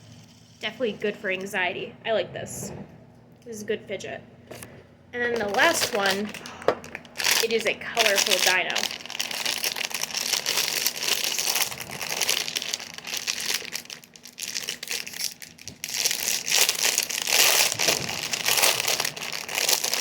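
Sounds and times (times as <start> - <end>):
plastic packaging crinkling: 5.2 - 20.0.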